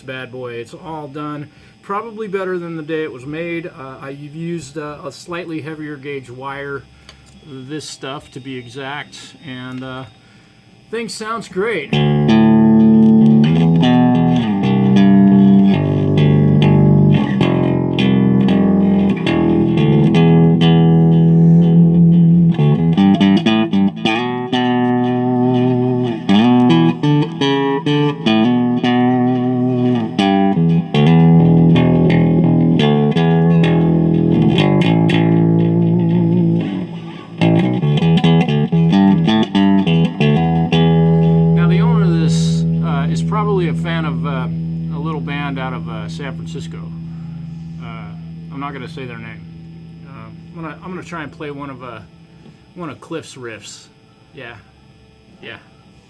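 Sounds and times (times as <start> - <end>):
electric bass guitar plucked notes: 11.9 - 52.1.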